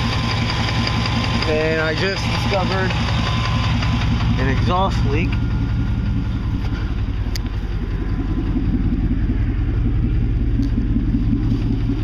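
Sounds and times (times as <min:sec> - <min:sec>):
exhaust leak ticking: 0:00.0 - 0:12.0
truck engine idling: 0:00.0 - 0:12.0.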